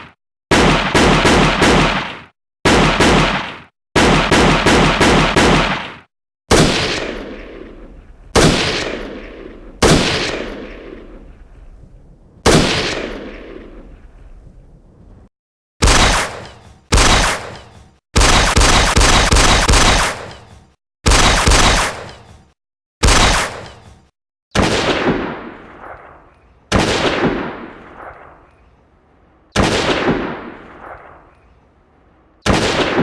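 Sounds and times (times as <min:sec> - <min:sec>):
single gunshots with echo: 0:00.0 - 0:11.2, 0:12.4 - 0:13.8, 0:15.8 - 0:17.6, 0:18.2 - 0:20.4, 0:21.1 - 0:22.1, 0:23.0 - 0:23.8, 0:29.6 - 0:31.4, 0:32.4 - 0:33.0
automatic gunfire bursts: 0:04.0 - 0:05.8, 0:15.8 - 0:17.5, 0:18.2 - 0:20.3, 0:21.1 - 0:22.0, 0:23.0 - 0:23.6.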